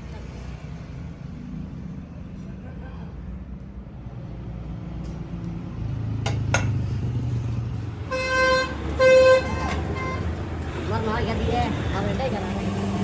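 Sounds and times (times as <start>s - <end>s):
traffic rumble: 0.0s - 13.0s
vehicle horn honking: 8.1s - 10.4s.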